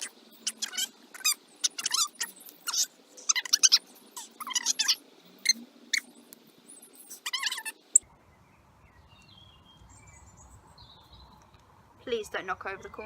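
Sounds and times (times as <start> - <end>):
small animal squeaking: 0.0 - 6.1, 6.8 - 7.8.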